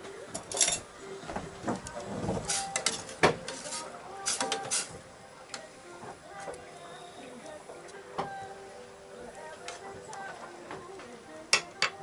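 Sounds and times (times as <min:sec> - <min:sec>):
cookware and utensils clattering: 0:00.3 - 0:00.9, 0:01.7 - 0:05.0, 0:11.5 - 0:12.0.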